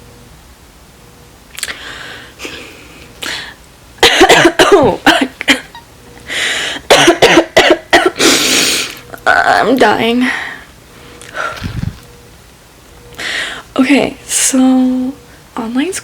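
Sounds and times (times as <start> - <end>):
breathy exhales: 1.7 - 3.6, 13.2 - 13.7
person coughing: 4.0 - 5.8, 6.9 - 8.4.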